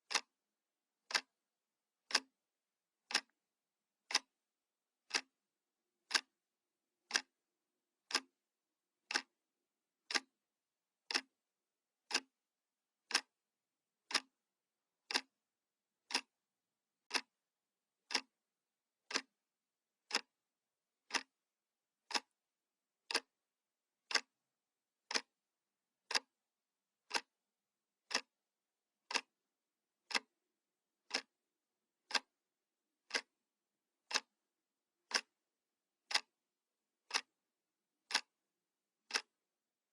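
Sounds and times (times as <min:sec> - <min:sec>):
clock ticking: 0:00.0 - 0:00.3, 0:01.0 - 0:01.3, 0:02.1 - 0:02.3, 0:03.0 - 0:03.4, 0:04.0 - 0:04.3, 0:05.0 - 0:05.3, 0:06.1 - 0:06.4, 0:07.1 - 0:07.3, 0:08.1 - 0:08.3, 0:09.0 - 0:09.3, 0:10.1 - 0:10.3, 0:11.1 - 0:11.3, 0:12.1 - 0:12.3, 0:13.0 - 0:13.4, 0:14.0 - 0:14.4, 0:15.1 - 0:15.4, 0:16.0 - 0:16.3, 0:17.1 - 0:17.4, 0:18.0 - 0:18.3, 0:19.0 - 0:19.4, 0:20.0 - 0:20.3, 0:21.0 - 0:21.4, 0:22.0 - 0:22.4, 0:23.1 - 0:23.3, 0:24.1 - 0:24.4, 0:25.1 - 0:25.3, 0:26.1 - 0:26.4, 0:27.0 - 0:27.3, 0:28.1 - 0:28.3, 0:29.0 - 0:29.3, 0:30.1 - 0:30.3, 0:31.1 - 0:31.3, 0:32.1 - 0:32.3, 0:33.0 - 0:33.4, 0:34.1 - 0:34.4, 0:35.1 - 0:35.4, 0:36.1 - 0:36.4, 0:37.1 - 0:37.3, 0:38.1 - 0:38.4, 0:39.1 - 0:39.4.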